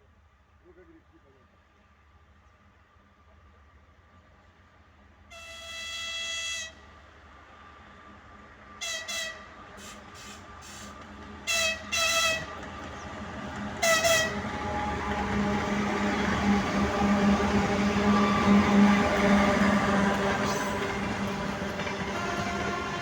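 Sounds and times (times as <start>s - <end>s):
locomotive horn blasts: 5.3s - 6.8s, 8.8s - 9.5s, 11.5s - 12.5s, 13.8s - 14.5s
locomotive rumble: 10.0s - 23.0s.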